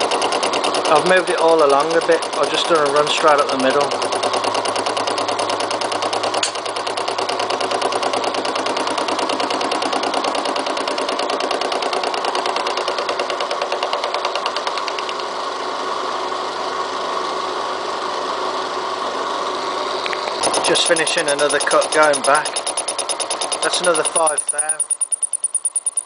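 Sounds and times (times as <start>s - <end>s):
milling machine cutting steel: 0.0s - 14.6s, 20.4s - 26.0s
sharp click: 6.4s - 6.6s, 20.0s - 26.0s.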